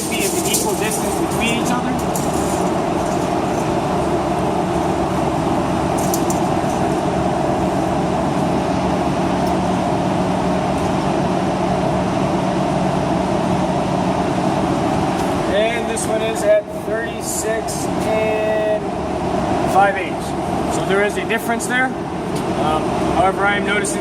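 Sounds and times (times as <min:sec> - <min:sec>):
rattle of clicks: 0:00.0 - 0:03.3, 0:06.0 - 0:06.5.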